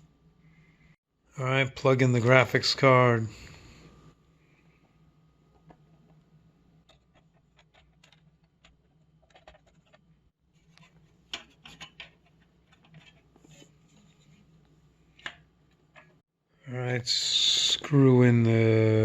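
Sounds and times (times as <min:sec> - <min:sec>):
hardware clicks and scrapes: 0:06.8 - 0:14.6.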